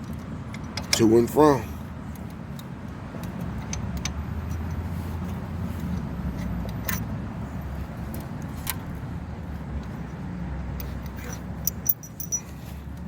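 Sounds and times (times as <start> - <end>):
light metallic clinks: 10.8 - 12.8.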